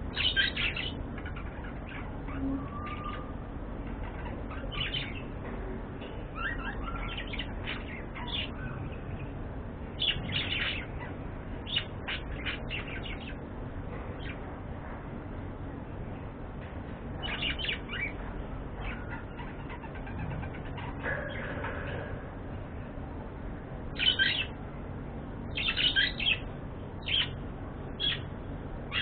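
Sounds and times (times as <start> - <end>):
low background hum: 0.0 - 29.0
budgerigars chirping: 0.2 - 3.3, 24.0 - 24.6, 25.5 - 26.4, 27.0 - 27.4.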